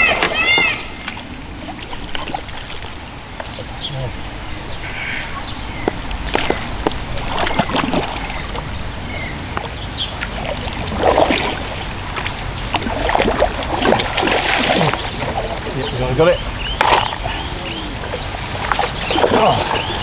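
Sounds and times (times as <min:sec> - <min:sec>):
fish splashing in water: 0:04.3 - 0:20.0.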